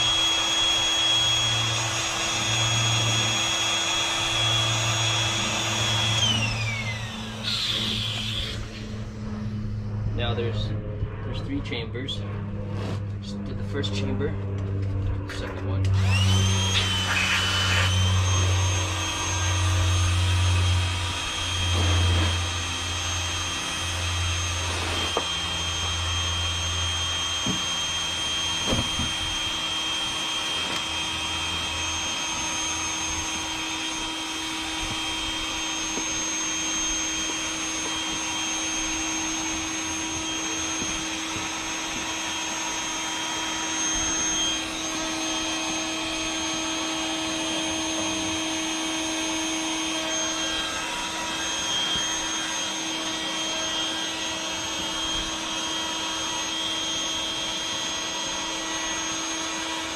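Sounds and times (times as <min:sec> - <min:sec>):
electric air pump whining: 0:00.0 - 0:11.7, 0:15.8 - 0:59.9
low pulsing throb: 0:00.0 - 0:17.1.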